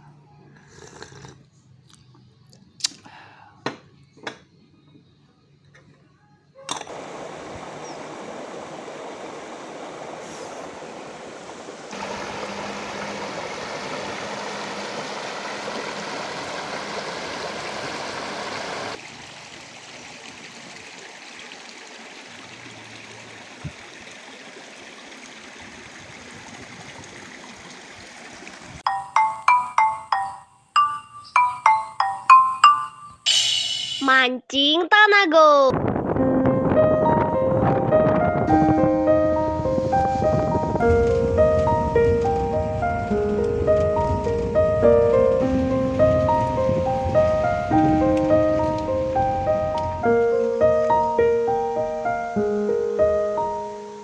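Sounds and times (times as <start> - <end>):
stream running water: 6.9 - 32.9, 45.4 - 54.0
mallet percussion music: 28.8 - 34.2.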